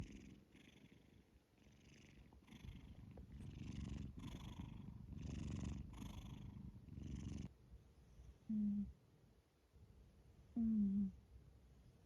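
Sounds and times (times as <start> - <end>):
cat snoring: 0.0 - 7.5, 10.6 - 11.2.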